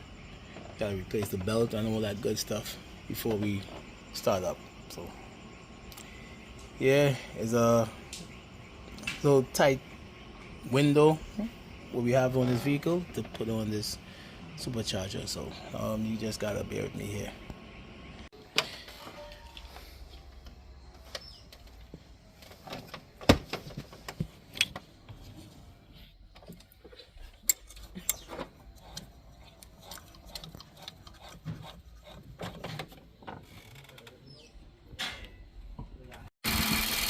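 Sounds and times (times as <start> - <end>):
car engine running: 36.5 - 37.0.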